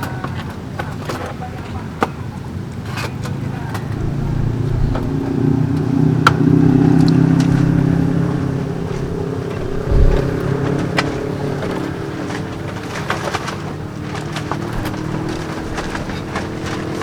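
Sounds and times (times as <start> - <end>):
vehicle passing on highway: 3.6 - 17.0.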